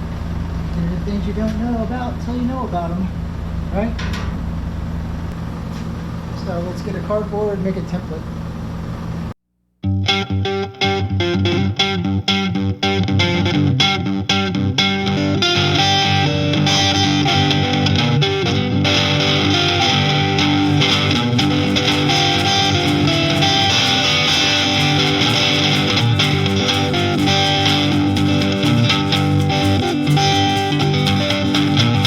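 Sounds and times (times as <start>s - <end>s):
rock music with distorted guitar: 9.9s - 32.0s.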